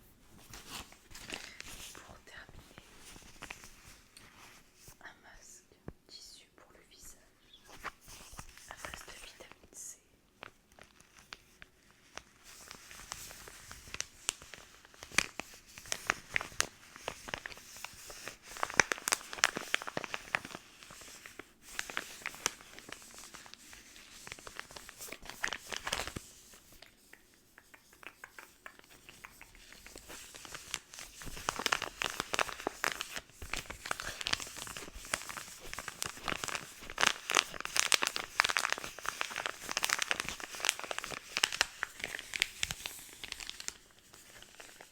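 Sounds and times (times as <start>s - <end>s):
packaging crinkling and tearing: 0.4s - 2.1s, 10.4s - 26.9s, 28.0s - 44.9s.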